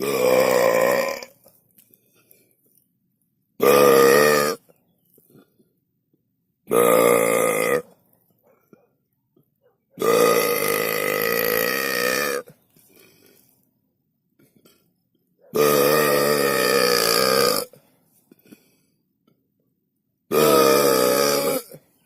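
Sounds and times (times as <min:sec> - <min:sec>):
person burping: 0:00.0 - 0:01.5, 0:03.6 - 0:04.6, 0:06.7 - 0:07.9, 0:10.0 - 0:12.6, 0:15.6 - 0:17.8, 0:20.3 - 0:21.9.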